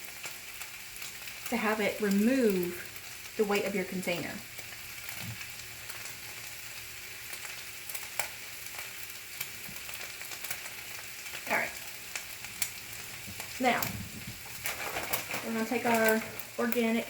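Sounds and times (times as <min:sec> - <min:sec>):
meat sizzling in a skillet: 0:00.0 - 0:17.0.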